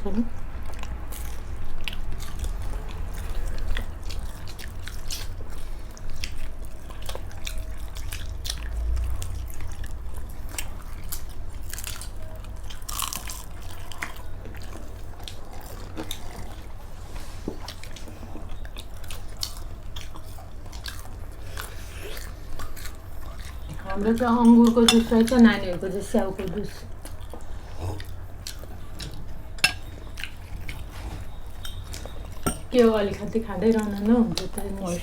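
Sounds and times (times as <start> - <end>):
wet chewing and mouth sounds: 0.0 - 35.0.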